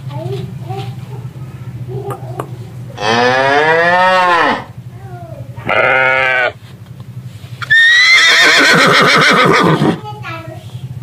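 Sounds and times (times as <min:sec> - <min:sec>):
goat bleating: 0:03.0 - 0:04.7, 0:05.6 - 0:06.6.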